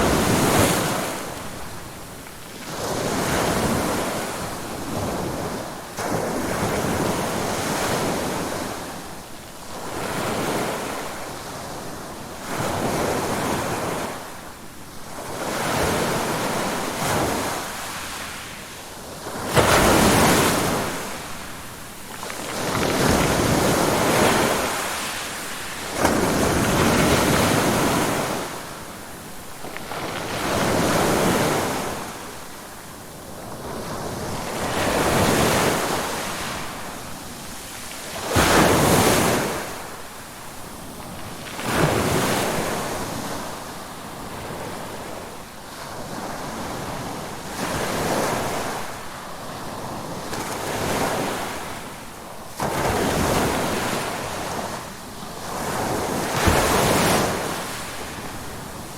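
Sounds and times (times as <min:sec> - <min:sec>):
ocean waves breaking: 0:19.3 - 0:29.1.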